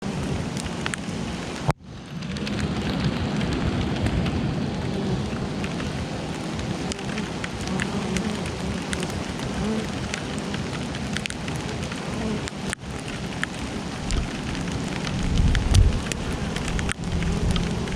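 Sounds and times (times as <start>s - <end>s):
rain drops ticking: 0.0s - 17.9s
honeybees humming: 4.9s - 17.9s.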